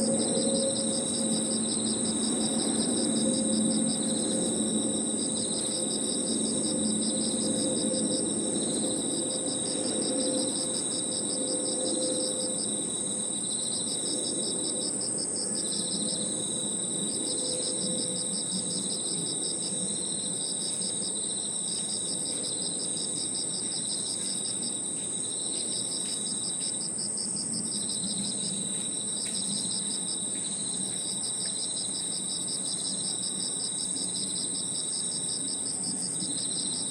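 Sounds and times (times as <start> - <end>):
high insect trill: 0.0 - 36.9
lower insect trill: 0.0 - 36.9
rapidly pulsing insect chirp: 0.0 - 36.9.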